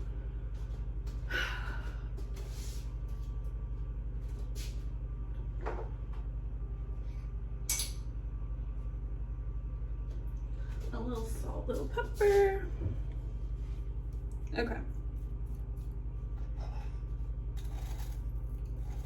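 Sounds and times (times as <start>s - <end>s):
steady low hum: 0.0s - 19.0s.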